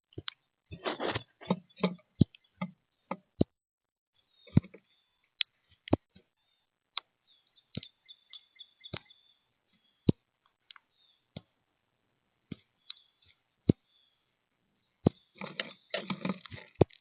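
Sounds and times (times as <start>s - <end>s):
birds tapping and knocking: 0.2s - 3.6s, 4.4s - 4.9s, 15.0s - 17.0s
faint high bird chirps: 0.4s - 3.2s, 4.2s - 5.5s, 6.3s - 10.2s, 10.8s - 11.3s, 12.6s - 16.4s.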